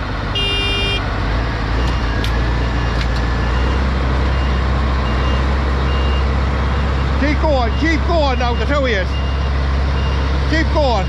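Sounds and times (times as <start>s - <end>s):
tractor engines straining: 0.0s - 11.0s
short high beep: 0.4s - 1.0s
faint warning beeps: 1.9s - 10.3s.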